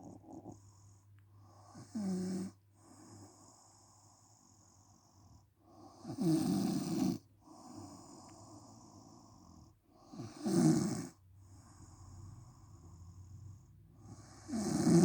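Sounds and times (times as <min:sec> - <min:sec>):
quiet breathing: 0:00.0 - 0:06.2, 0:07.2 - 0:10.5, 0:11.1 - 0:15.0
woman snoring: 0:06.0 - 0:07.9, 0:10.2 - 0:11.2, 0:14.1 - 0:15.0.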